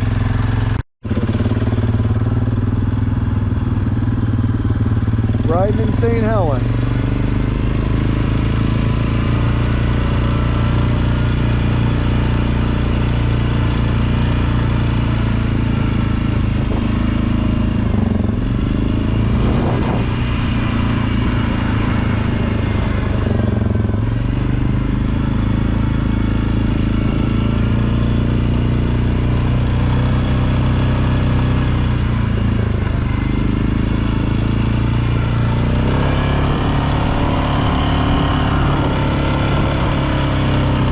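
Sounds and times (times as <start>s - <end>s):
quad bike engine running: 0.0s - 40.9s.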